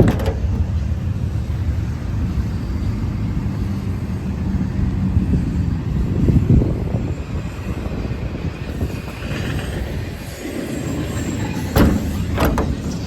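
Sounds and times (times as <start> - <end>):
diesel engine idling: 0.0 - 7.0.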